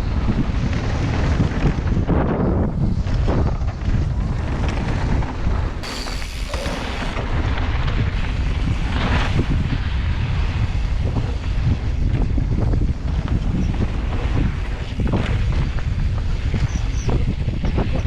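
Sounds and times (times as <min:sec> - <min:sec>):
wind buffeting microphone: 0:00.0 - 0:18.0
bike knocking over ground: 0:05.8 - 0:08.0.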